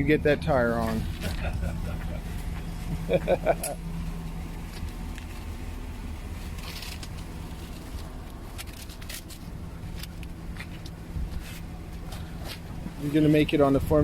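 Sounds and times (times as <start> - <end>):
steady low hum: 0.0 - 14.0
tire fitting clicks and scrapes: 6.3 - 13.0.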